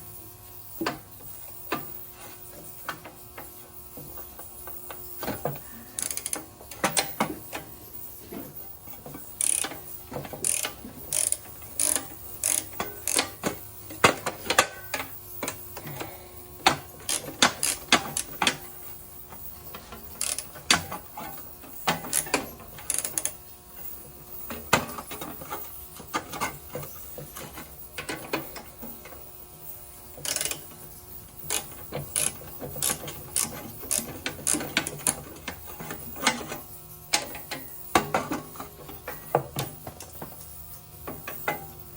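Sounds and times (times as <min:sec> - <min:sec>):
ratchet wrench clicking: 0:05.9 - 0:07.7, 0:09.3 - 0:15.6, 0:16.6 - 0:18.7, 0:20.1 - 0:25.3, 0:30.2 - 0:30.8, 0:31.4 - 0:37.6.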